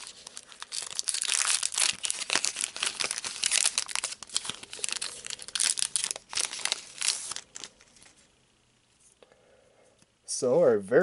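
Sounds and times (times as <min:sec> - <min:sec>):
foil wrapper crinkling and tearing: 0:00.0 - 0:08.2.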